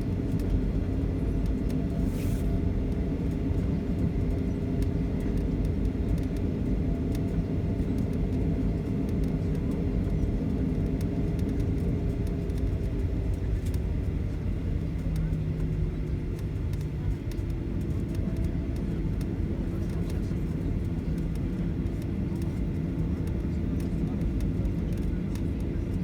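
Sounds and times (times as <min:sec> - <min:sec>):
airplane cabin rumble: 0:00.0 - 0:26.0.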